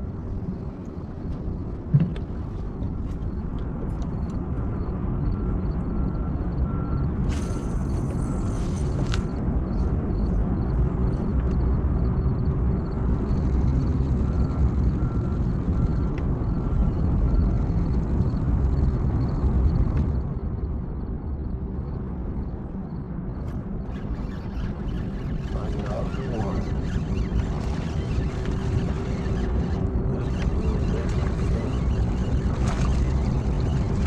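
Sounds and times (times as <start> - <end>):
boat motor rumbling: 0.0 - 4.8, 23.4 - 34.0
wind: 0.0 - 34.0
water noise: 23.5 - 34.0.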